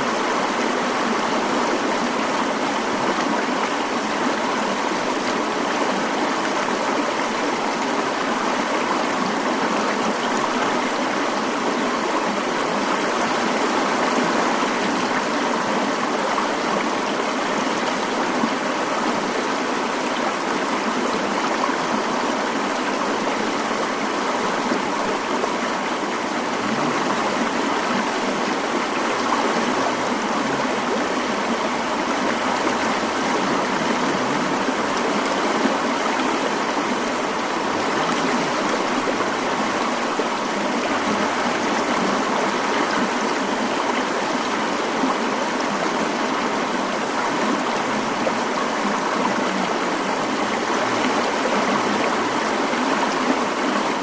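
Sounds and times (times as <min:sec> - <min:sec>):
stream running over rocks: 0:00.0 - 0:54.0.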